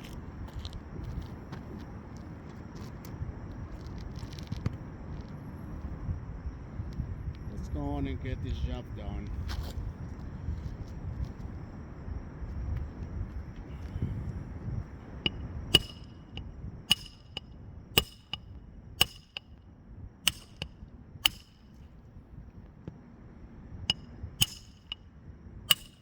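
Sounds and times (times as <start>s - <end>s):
nails hammered into roof shingle: 15.8s - 16.2s, 16.9s - 17.4s, 18.0s - 19.5s, 20.3s - 21.7s, 25.7s - 26.0s.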